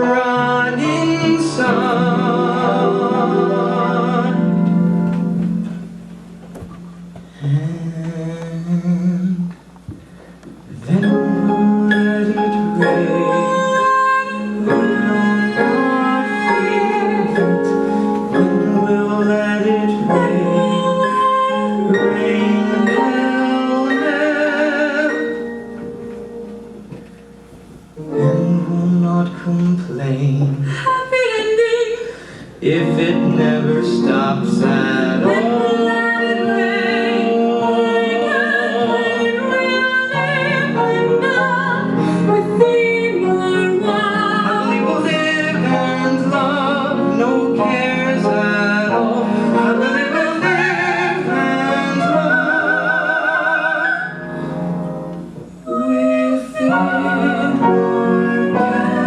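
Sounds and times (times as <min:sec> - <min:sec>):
duet singing with vibrato: 0:00.0 - 0:06.3, 0:10.8 - 0:25.8, 0:30.7 - 0:54.8, 0:55.5 - 0:59.0
instrumental accompaniment: 0:00.0 - 0:30.6.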